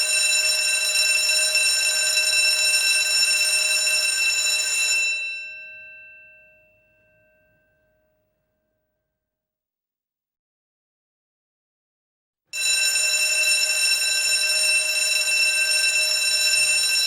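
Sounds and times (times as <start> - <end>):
electric school bell ringing: 0.0 - 8.2, 12.6 - 17.0.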